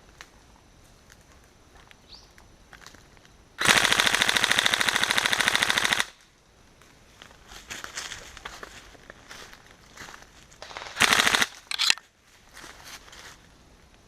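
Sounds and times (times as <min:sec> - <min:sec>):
airsoft rifle full-auto burst: 0:03.6 - 0:06.2, 0:10.6 - 0:12.0.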